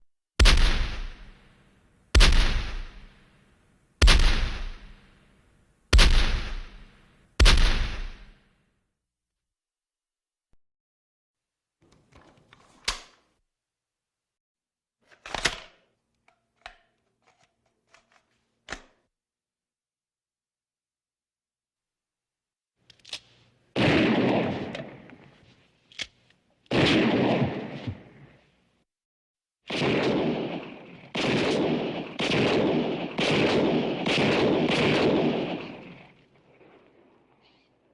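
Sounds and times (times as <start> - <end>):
sharp gunshot reports: 0.4 - 1.5, 2.2 - 3.2, 4.0 - 5.1, 6.0 - 8.4
gun clicks and clacks: 0.4 - 1.6, 2.2 - 3.3, 4.0 - 5.2, 6.0 - 8.4
gunshots with echoing rumble: 0.4 - 1.6, 2.2 - 3.3, 4.0 - 5.2, 5.9 - 8.4, 23.8 - 25.3, 26.7 - 28.3, 29.7 - 37.0.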